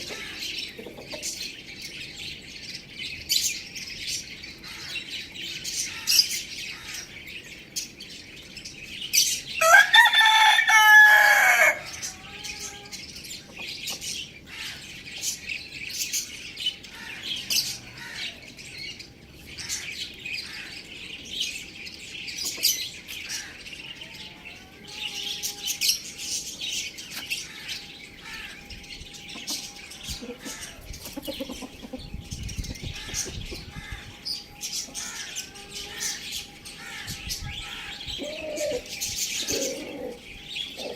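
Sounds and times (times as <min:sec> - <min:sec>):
small birds chirping: 0:00.0 - 0:09.8, 0:10.7 - 0:40.9
rooster crowing: 0:09.6 - 0:12.0.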